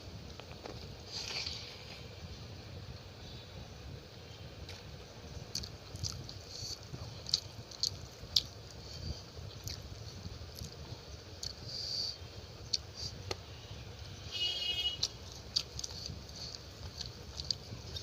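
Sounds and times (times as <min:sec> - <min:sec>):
person chewing food: 0:05.5 - 0:10.8, 0:11.4 - 0:11.6, 0:15.0 - 0:18.0.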